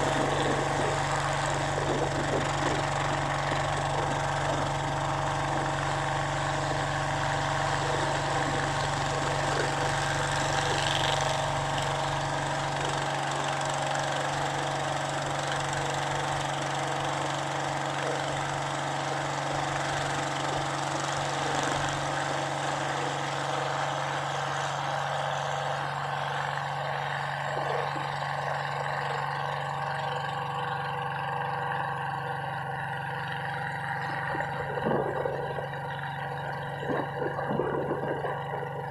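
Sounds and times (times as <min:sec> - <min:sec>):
boat engine running: 0:00.0 - 0:38.9.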